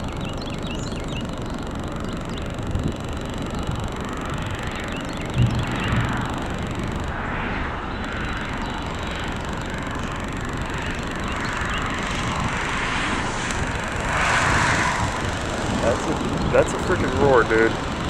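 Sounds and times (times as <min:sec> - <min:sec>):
wind buffeting microphone: 0:02.2 - 0:18.0
strong wind roaring: 0:05.3 - 0:18.0.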